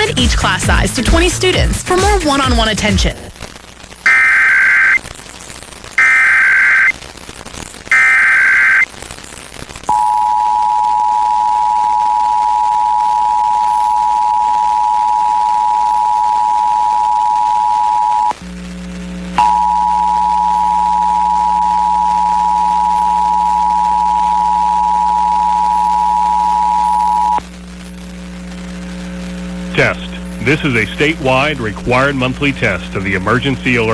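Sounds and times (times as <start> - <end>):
digital data warbles: 4.1 - 5.0, 6.0 - 7.0, 7.9 - 8.9
two-tone attention signal: 4.1 - 5.0, 6.0 - 6.9, 7.9 - 8.8.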